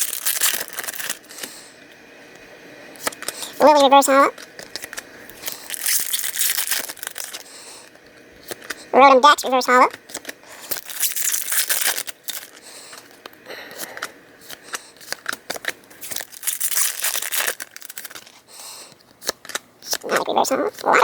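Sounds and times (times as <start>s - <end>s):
foil wrappers tearing and crinkling: 0.0s - 1.6s, 4.4s - 7.7s, 10.0s - 20.8s.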